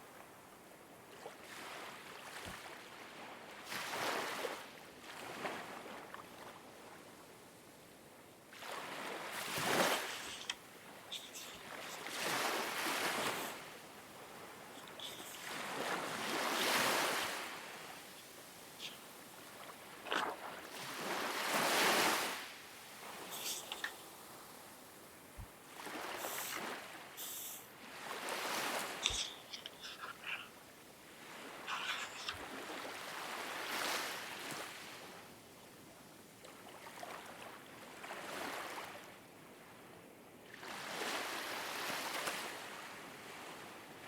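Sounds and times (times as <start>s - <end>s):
ocean waves washing in: 8.6s - 35.1s.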